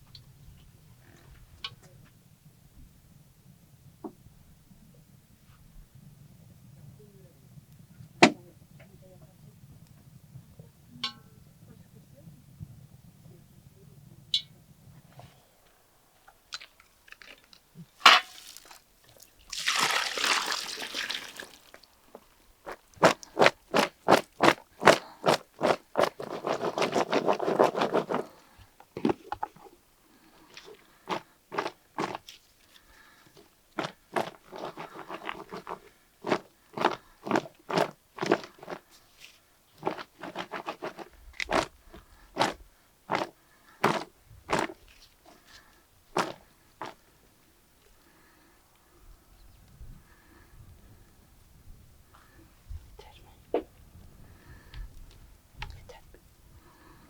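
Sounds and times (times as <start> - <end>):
sharp knocks and crunches: 22.7 - 29.7, 30.6 - 32.4, 33.3 - 38.8, 39.8 - 45.4, 46.2 - 47.0.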